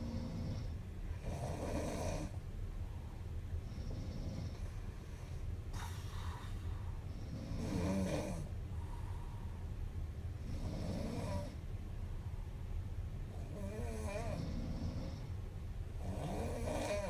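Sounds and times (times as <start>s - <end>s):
woman snoring: 0.0s - 2.4s, 7.2s - 8.5s, 10.4s - 11.6s, 13.4s - 15.3s, 16.0s - 17.0s
steady low hum: 0.0s - 17.0s.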